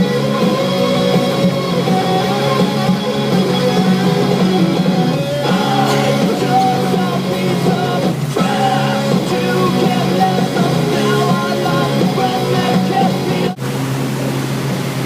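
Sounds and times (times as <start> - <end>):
person singing: 0.0 - 13.6
rock music with electric guitar: 0.0 - 13.6.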